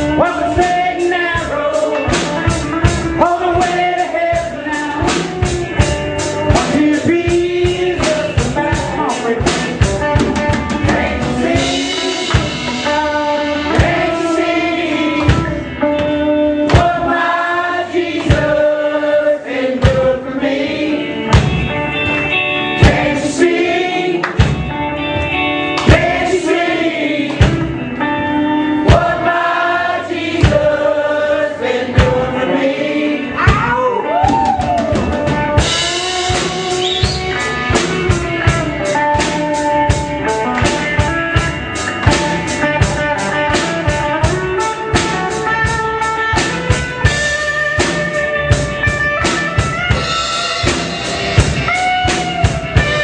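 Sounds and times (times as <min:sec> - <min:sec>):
voices singing: 0:00.0 - 0:21.8, 0:22.5 - 0:40.0
band playing gospel song: 0:00.0 - 0:53.0
drum beats: 0:00.0 - 0:53.0.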